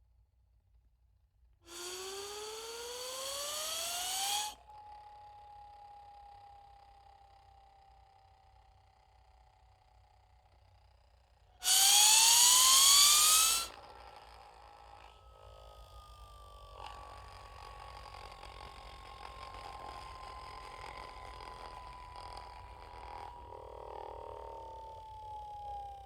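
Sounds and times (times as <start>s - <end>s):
cartoon rising tone: 1.7s - 4.6s.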